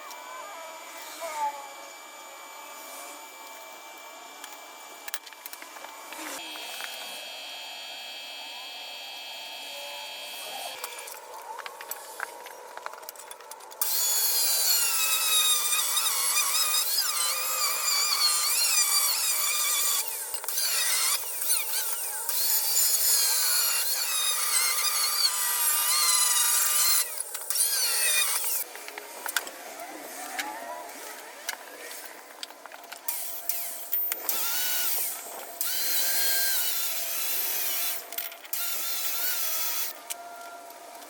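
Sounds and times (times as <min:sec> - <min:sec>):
power tool whining: 0:13.8 - 0:29.3, 0:33.0 - 0:40.8.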